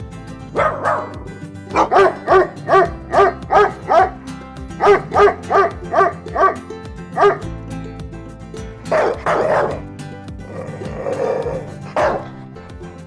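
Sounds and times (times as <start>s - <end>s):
background music: 0.0s - 13.0s
dog barking: 0.6s - 4.2s, 4.8s - 6.6s, 7.2s - 7.4s, 8.9s - 9.8s, 11.9s - 12.4s.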